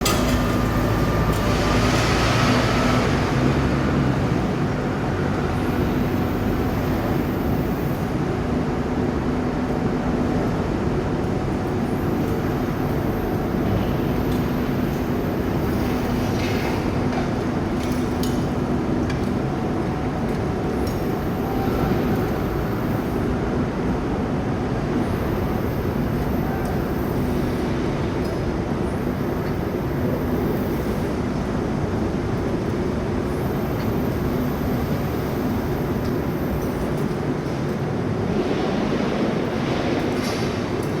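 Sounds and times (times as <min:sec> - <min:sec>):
industrial furnace din: 0:00.0 - 0:08.5.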